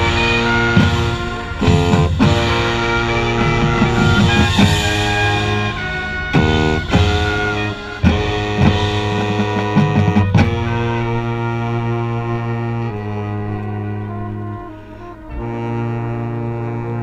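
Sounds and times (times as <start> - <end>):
sharp drum hits: 0.0 - 11.1
electric guitar: 0.0 - 17.0
marching band playing: 0.0 - 17.0.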